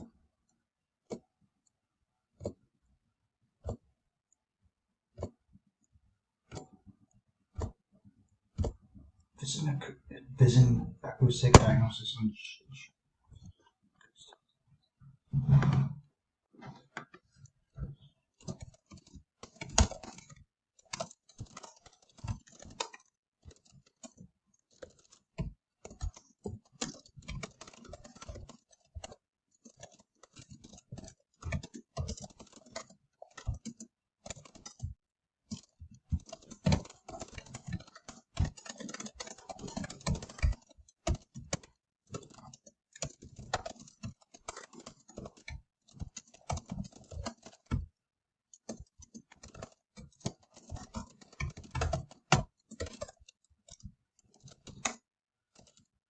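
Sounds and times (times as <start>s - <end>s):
fast typing on keyboard: 6.5s - 6.8s, 8.5s - 8.8s, 16.9s - 56.0s.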